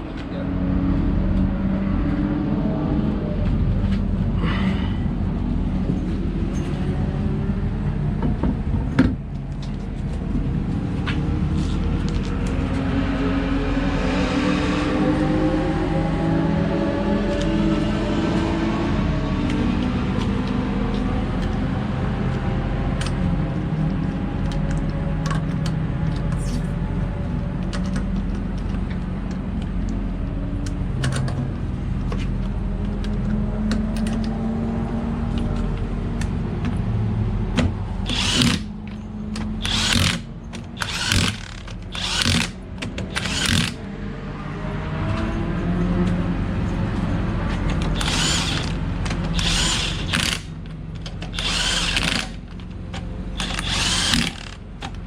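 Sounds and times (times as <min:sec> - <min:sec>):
engine drone: 0:00.0 - 0:55.0
impact wrench bursts: 0:38.0 - 0:38.8, 0:39.4 - 0:43.8, 0:47.9 - 0:50.6, 0:51.3 - 0:52.6, 0:53.4 - 0:54.6.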